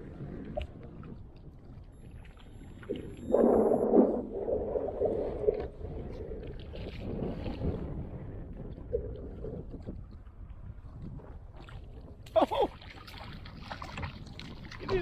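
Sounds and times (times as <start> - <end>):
water around kayak: 0.0 - 15.0
wind: 0.0 - 15.0
low humming rubbing sound: 2.2 - 7.8.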